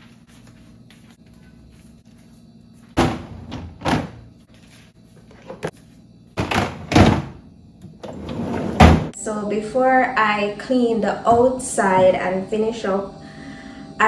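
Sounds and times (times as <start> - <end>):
refrigerator doors thudding: 3.0 - 4.3, 6.4 - 7.4, 8.0 - 9.1, 11.3 - 12.4.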